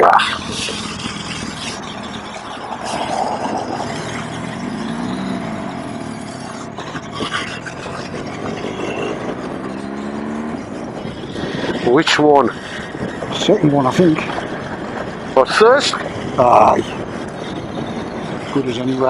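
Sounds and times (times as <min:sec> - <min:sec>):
wind rushing over helmet microphone: 0:00.0 - 0:19.0
motorcycle engine running: 0:00.2 - 0:19.0.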